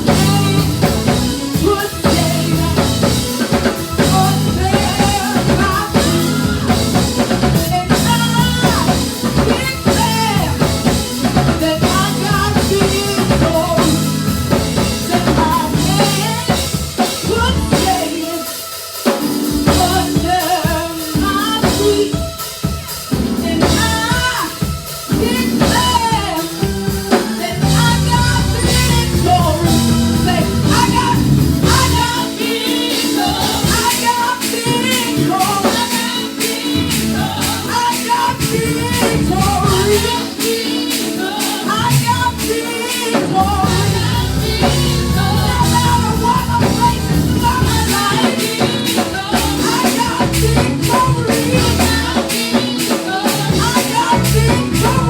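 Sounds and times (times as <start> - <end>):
band with drum kit: 0.0 - 55.0
gospel singing: 0.0 - 55.0
heavy low bass: 27.7 - 32.0, 43.7 - 48.0.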